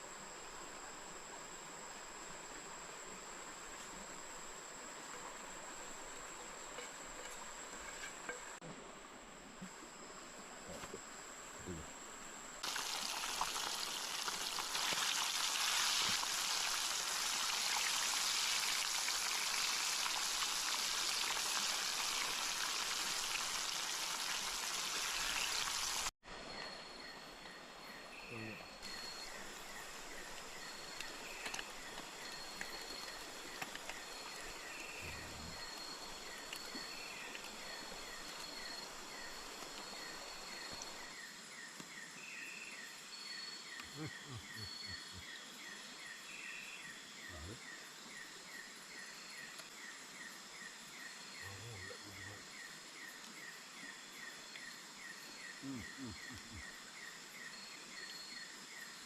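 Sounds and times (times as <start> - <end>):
insects trilling: 9.4 - 59.0
rush of running water: 12.6 - 26.1.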